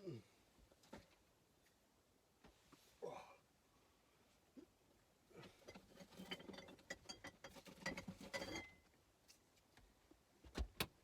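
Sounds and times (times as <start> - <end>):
objects clicking and rattling: 5.6 - 8.8.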